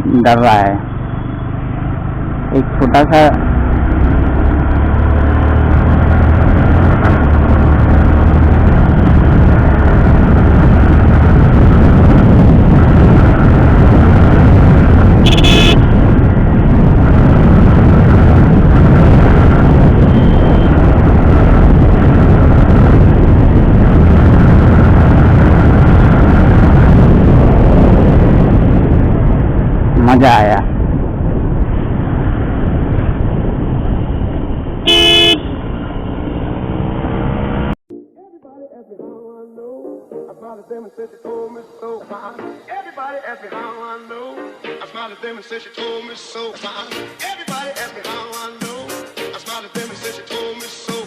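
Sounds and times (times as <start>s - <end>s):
motorcycle engine and road noise: 0.0s - 37.8s
wind rushing over microphone: 0.0s - 37.8s
horn: 15.2s - 15.9s.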